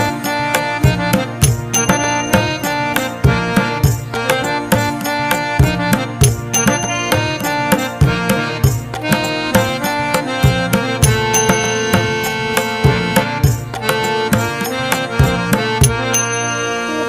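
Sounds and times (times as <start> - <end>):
steady drum beat: 0.0 - 16.2
pitched instruments: 0.0 - 17.0.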